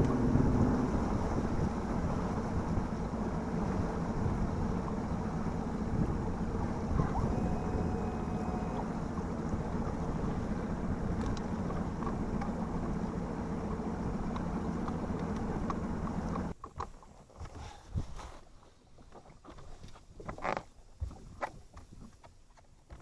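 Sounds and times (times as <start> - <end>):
wind on microphone: 0.0 - 12.9
water around a boat: 0.0 - 23.0
faint ticks: 14.3 - 16.8.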